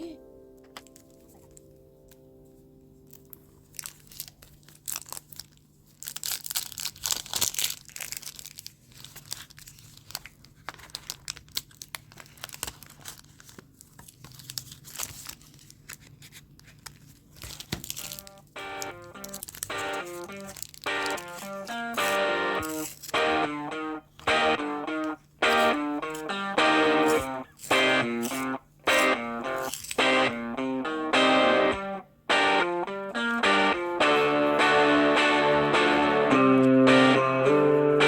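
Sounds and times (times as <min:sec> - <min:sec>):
paper scratching and crinkling: 0:03.6 - 0:18.4, 0:19.3 - 0:23.2, 0:27.1 - 0:30.0
plucked guitar music: 0:18.1 - 0:38.0.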